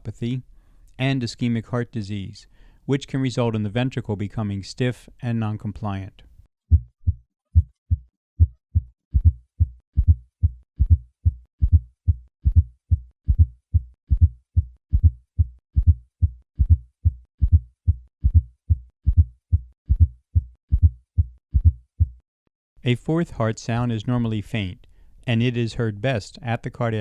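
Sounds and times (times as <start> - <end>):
heartbeat gallop rhythm: 6.7 - 22.2.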